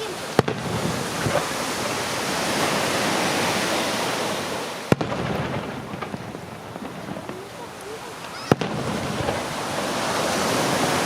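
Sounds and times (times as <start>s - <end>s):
fireworks crackling hiss: 0.0s - 11.0s
firework bang: 0.3s - 2.8s, 4.9s - 11.0s.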